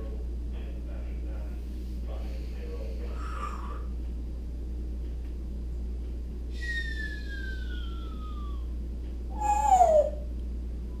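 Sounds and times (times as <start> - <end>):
low electrical hum: 0.0 - 11.0
parrot whistling: 6.5 - 8.7, 9.3 - 10.3.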